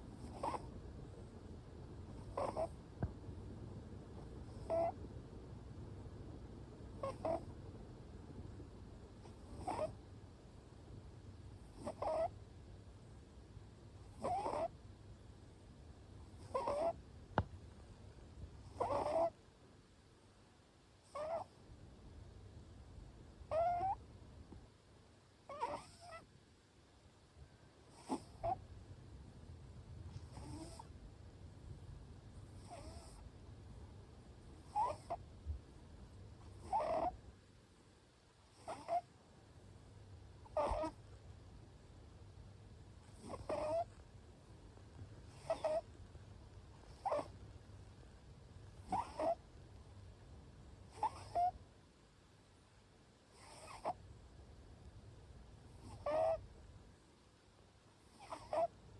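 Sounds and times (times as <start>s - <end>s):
cat snoring: 0.1s - 0.8s, 2.1s - 2.8s, 4.2s - 5.0s, 7.0s - 7.5s, 9.2s - 10.0s, 11.6s - 12.3s, 14.0s - 14.8s, 16.3s - 17.0s, 18.6s - 19.4s, 21.0s - 21.6s, 23.5s - 24.0s, 25.5s - 26.3s, 27.9s - 28.6s, 30.1s - 31.0s, 32.4s - 33.2s, 34.6s - 35.2s, 36.4s - 37.2s, 38.5s - 39.1s, 40.4s - 41.0s, 43.0s - 44.0s, 45.2s - 45.9s, 46.7s - 47.4s, 48.7s - 49.4s, 50.9s - 51.6s, 53.3s - 54.0s, 55.6s - 56.4s, 58.0s - 58.7s.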